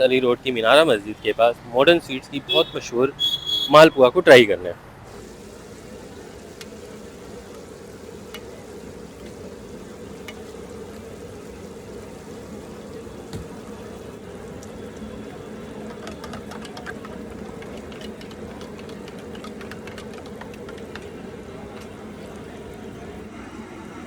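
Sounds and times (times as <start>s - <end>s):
food frying in hot fat: 5.1s - 20.8s.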